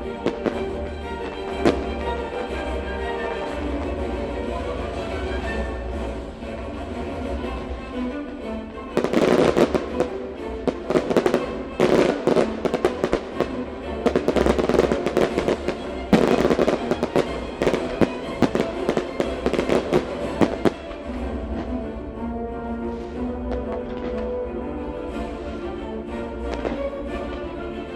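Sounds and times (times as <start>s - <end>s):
firework bangs and crackles: 0.0s - 6.3s, 8.9s - 21.9s, 23.0s - 24.4s, 26.4s - 27.4s
music: 0.0s - 27.9s.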